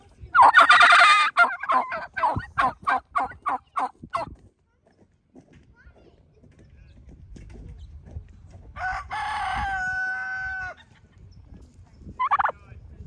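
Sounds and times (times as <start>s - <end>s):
rooster crowing: 8.8s - 10.8s.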